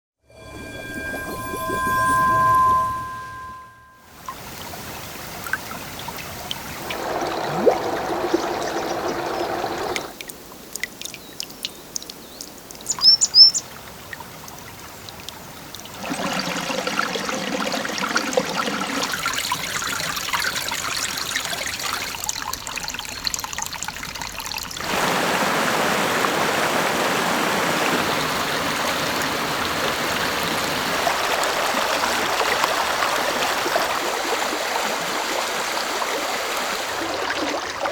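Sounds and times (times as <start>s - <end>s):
high chirps: 0.3s - 4.1s, 12.8s - 13.6s
brook trickling and bubbling: 4.2s - 25.4s, 27.5s - 37.9s
stream water rushing: 5.4s - 10.2s, 24.0s - 37.9s.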